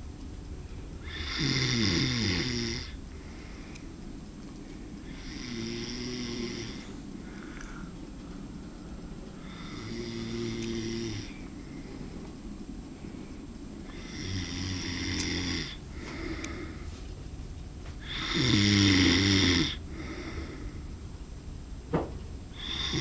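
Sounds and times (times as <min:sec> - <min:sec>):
man snoring: 0:01.0 - 0:03.0, 0:05.0 - 0:07.0, 0:09.4 - 0:11.4, 0:13.9 - 0:16.8, 0:18.0 - 0:20.6, 0:22.6 - 0:23.0.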